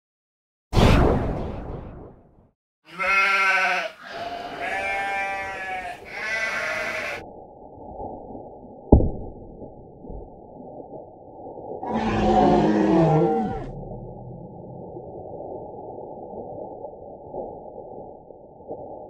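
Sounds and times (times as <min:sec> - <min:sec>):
sheep bleating: 0:02.9 - 0:07.2.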